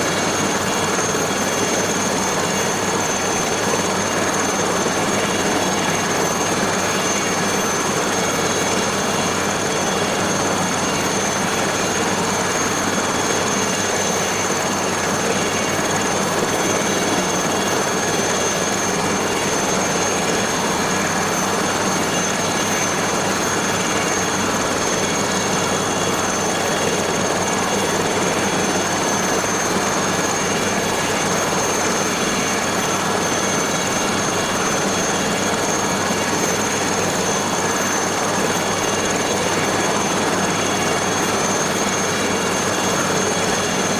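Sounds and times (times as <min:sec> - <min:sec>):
helicopter engine and rotor noise: 0:00.0 - 0:43.9
high turbine whine: 0:00.0 - 0:43.9.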